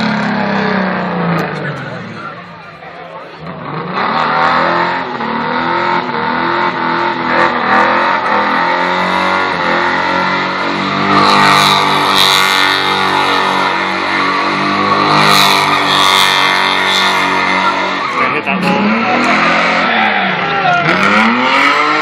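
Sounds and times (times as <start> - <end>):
car engine revving hard: 0.0 - 2.4, 3.4 - 22.0.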